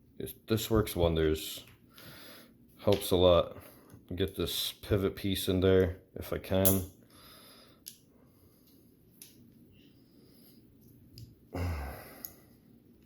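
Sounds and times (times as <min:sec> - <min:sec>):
person sighing: 0:11.5 - 0:12.5.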